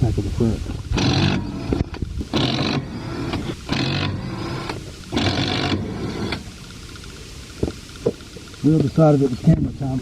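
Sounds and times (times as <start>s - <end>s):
power tool bursts: 0.9s - 6.8s.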